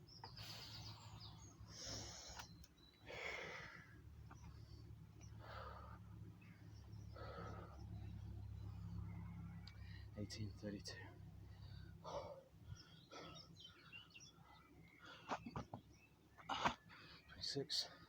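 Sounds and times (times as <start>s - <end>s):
man breathing hard: 3.0s - 4.0s, 5.3s - 6.3s, 7.1s - 8.2s, 11.4s - 15.3s.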